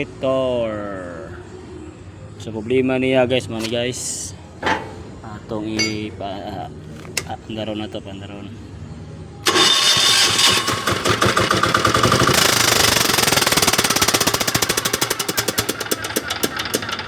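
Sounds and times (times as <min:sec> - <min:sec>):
diesel engine knocking: 0:09.5 - 0:17.0.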